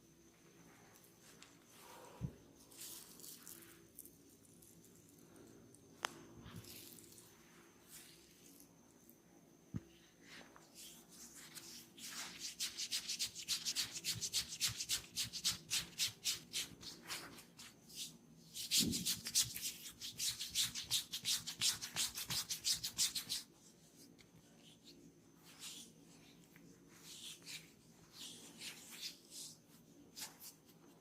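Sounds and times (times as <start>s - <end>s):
hands rubbing skin or hair: 10.3s - 31.0s.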